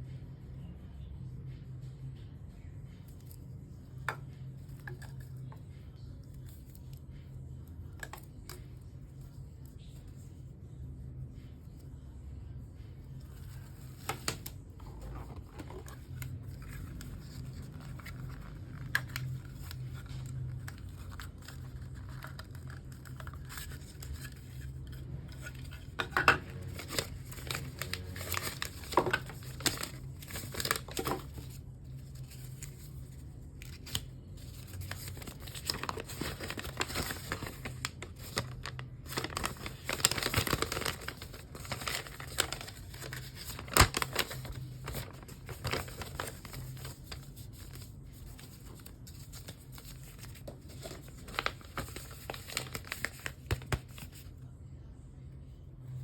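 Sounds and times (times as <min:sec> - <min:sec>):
faint low hum: 0:00.0 - 0:56.0
crinkling plastic and paper: 0:13.2 - 0:54.4.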